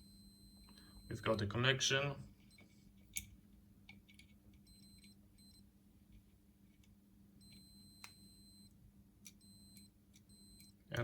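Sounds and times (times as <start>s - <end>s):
continuity tester beeping: 0.0s - 2.6s, 4.6s - 5.7s, 7.4s - 11.0s.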